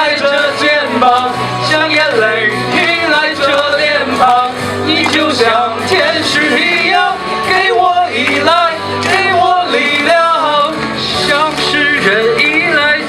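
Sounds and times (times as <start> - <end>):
backing music: 0.0 - 13.0
person singing pop song: 0.0 - 13.0.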